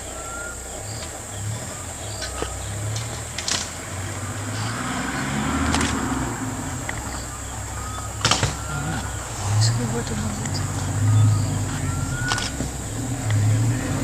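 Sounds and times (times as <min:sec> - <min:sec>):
high insect drone: 0:00.0 - 0:14.0
vehicle engine hum: 0:00.0 - 0:14.0
sharp clicks: 0:00.9 - 0:04.7, 0:05.6 - 0:09.3, 0:10.3 - 0:13.8.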